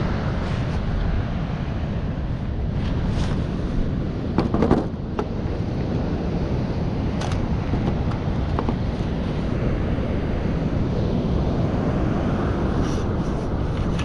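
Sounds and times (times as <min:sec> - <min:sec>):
ocean surf: 0:00.0 - 0:14.0
wind buffeting microphone: 0:00.0 - 0:14.0
clatter of knocks: 0:04.4 - 0:05.3, 0:07.2 - 0:08.9.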